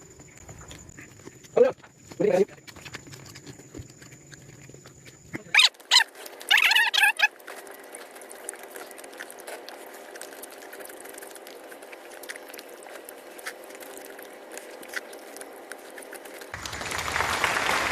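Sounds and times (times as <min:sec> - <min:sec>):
steady low hum: 0:00.0 - 0:17.9
wet clicks of eating noodles: 0:02.7 - 0:16.6.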